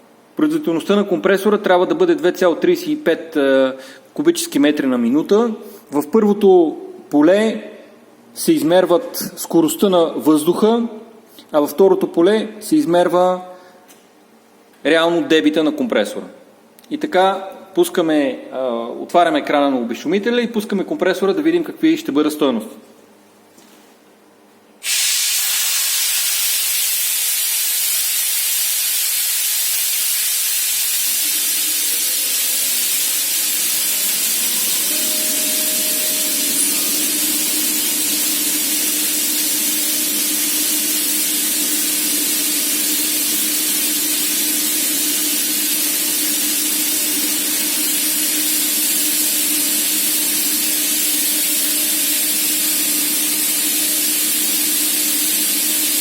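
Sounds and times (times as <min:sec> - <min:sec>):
air compressor running: 0:24.8 - 0:56.0
compressed air hissing: 0:24.8 - 0:56.0.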